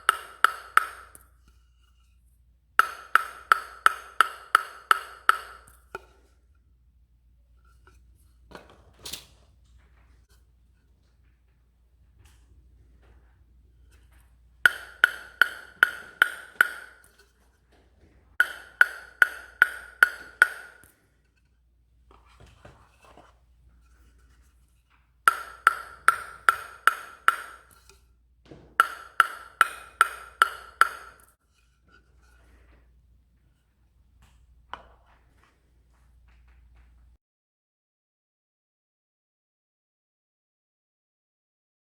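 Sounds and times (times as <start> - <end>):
table tennis ball bouncing on bat: 0.0 - 1.9, 2.8 - 6.3, 12.1 - 21.1, 25.3 - 32.8.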